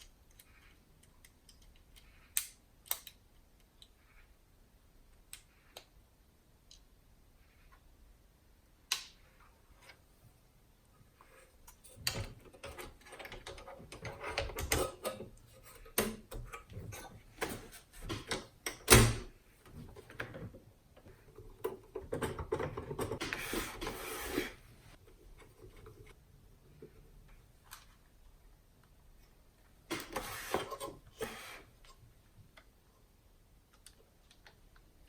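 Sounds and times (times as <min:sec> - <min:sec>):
plastic parts clicking and rattling: 0:00.0 - 0:04.0, 0:11.2 - 0:24.6.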